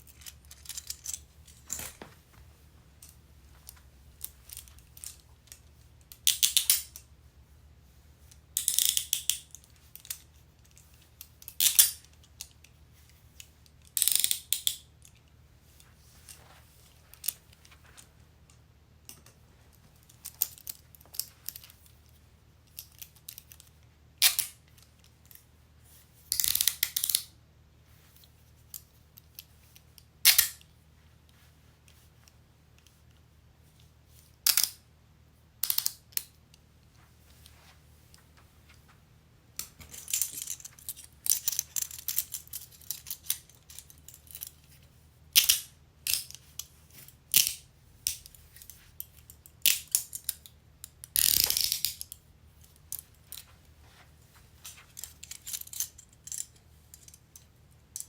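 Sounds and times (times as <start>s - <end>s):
metal handcuffs clicking and rattling: 0.0s - 2.1s, 3.0s - 7.1s, 8.6s - 12.6s, 13.4s - 15.2s, 20.0s - 25.4s, 26.3s - 27.3s, 30.2s - 30.7s, 34.4s - 34.8s, 35.6s - 36.3s, 39.6s - 44.8s, 45.4s - 53.5s, 54.6s - 58.0s.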